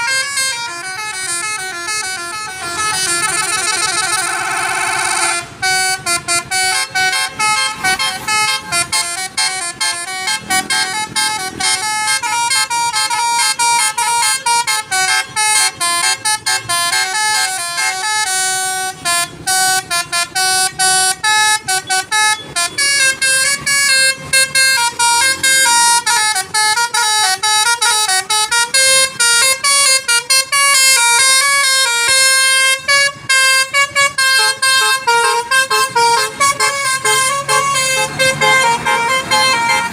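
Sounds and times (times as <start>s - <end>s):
bus horn playing a melody: 0.0s - 39.9s.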